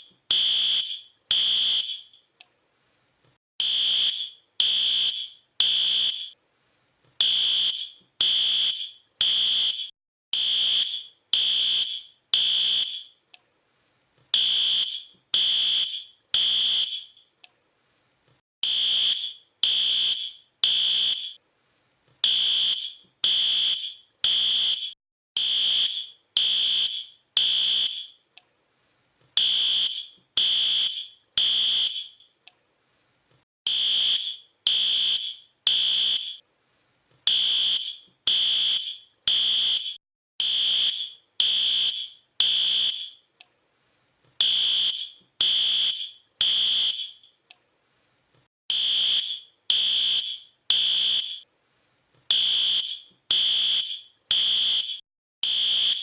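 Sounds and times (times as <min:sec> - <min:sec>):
fire alarm beeping: 0:00.3 - 0:02.2, 0:03.6 - 0:06.4, 0:07.2 - 0:13.2, 0:14.4 - 0:17.2, 0:18.6 - 0:21.4, 0:22.2 - 0:28.2, 0:29.4 - 0:32.2, 0:33.7 - 0:36.4, 0:37.3 - 0:43.2, 0:44.4 - 0:47.3, 0:48.7 - 0:51.4, 0:52.3 - 0:56.0.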